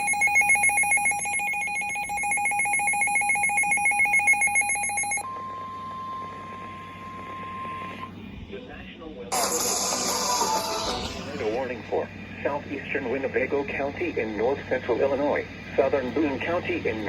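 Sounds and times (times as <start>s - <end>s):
pulsing two-tone alert signal: 0.0s - 8.1s
steady single-pitch warning tone: 0.0s - 8.2s.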